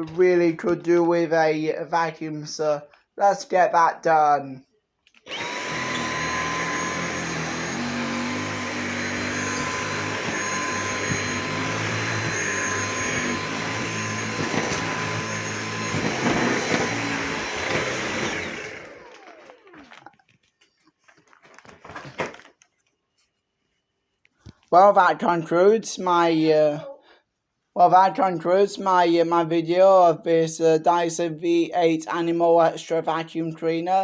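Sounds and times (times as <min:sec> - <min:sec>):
vacuum cleaner whining: 0:05.2 - 0:20.2.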